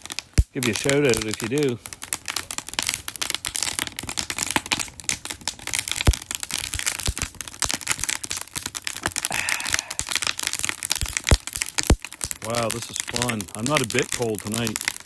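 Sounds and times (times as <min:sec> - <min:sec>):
wood fire crackling and popping: 0:00.0 - 0:15.0.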